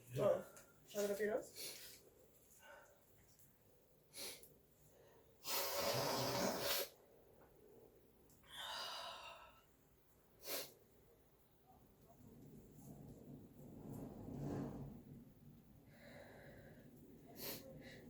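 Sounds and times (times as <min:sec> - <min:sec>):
rush of air through nose: 0:05.4 - 0:07.0
short sharp sniffs: 0:05.4 - 0:07.0, 0:10.4 - 0:10.8.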